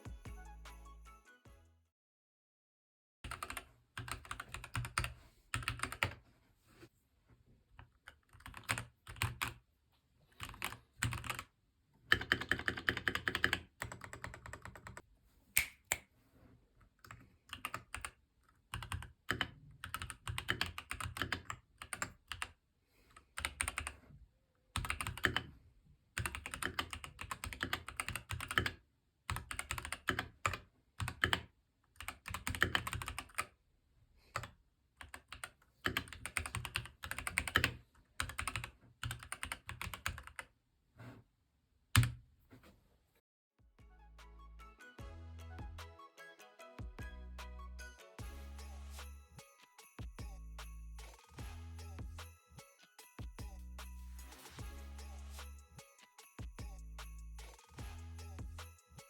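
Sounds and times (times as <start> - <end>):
mechanical keyboard typing: 3.3 - 6.2, 8.1 - 9.6, 10.4 - 11.5, 12.1 - 15.0, 17.0 - 22.5, 23.4 - 24.0, 24.8 - 25.5, 26.2 - 33.5, 34.4 - 40.5.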